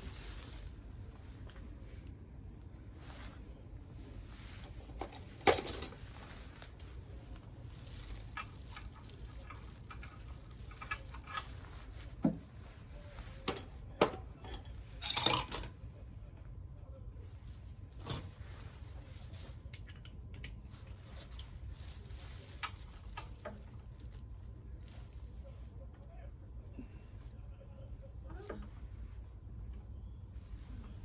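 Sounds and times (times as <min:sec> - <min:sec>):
metal parts clattering: 0:04.6 - 0:06.3, 0:07.8 - 0:12.0, 0:13.4 - 0:15.8.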